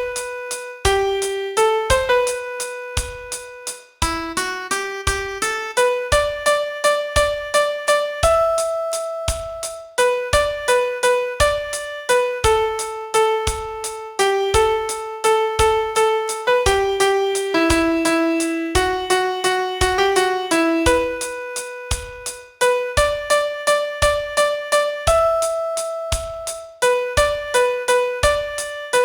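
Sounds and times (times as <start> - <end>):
slow piano melody: 0.0 - 29.0
click beat: 25.1 - 26.7.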